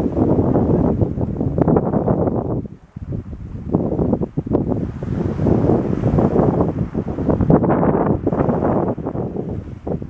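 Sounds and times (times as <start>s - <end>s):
ocean surf breaking: 0.0s - 10.0s
wind buffeting microphone: 0.0s - 10.0s.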